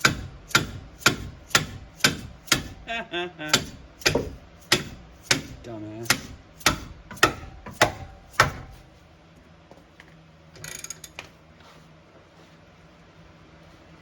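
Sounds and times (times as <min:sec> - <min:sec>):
sharp metallic knocks: 0:00.0 - 0:02.9, 0:03.5 - 0:08.8.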